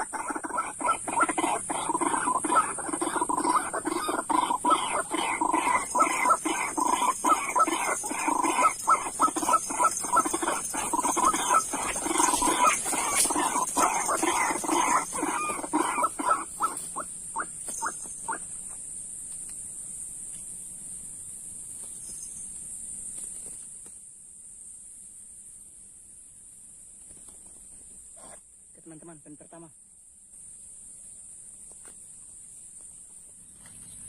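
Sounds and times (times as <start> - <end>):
bird harsh calls: 0.0 - 18.5
high-pitched insect drone: 0.0 - 23.6.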